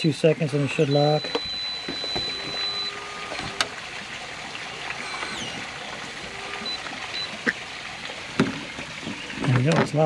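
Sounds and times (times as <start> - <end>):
short electronic tones: 0.8 - 3.7, 6.5 - 7.4.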